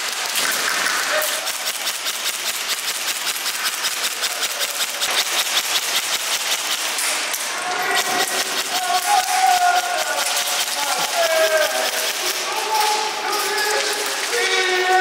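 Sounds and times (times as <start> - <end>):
airsoft guns firing: 0.0 - 14.3
distant held call: 7.5 - 15.0.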